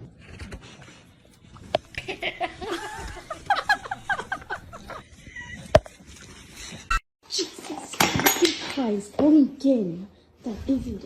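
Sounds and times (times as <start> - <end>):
person laughing: 1.9 - 5.7.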